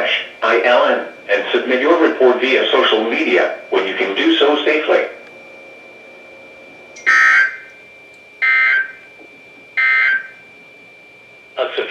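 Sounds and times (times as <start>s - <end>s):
radio hiss: 0.0s - 5.2s, 11.6s - 11.9s
buzzy digital bursts: 7.0s - 7.7s.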